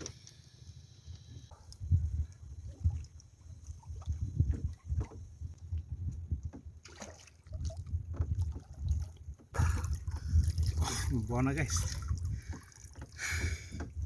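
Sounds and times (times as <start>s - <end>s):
seawater splashing: 6.6s - 14.0s.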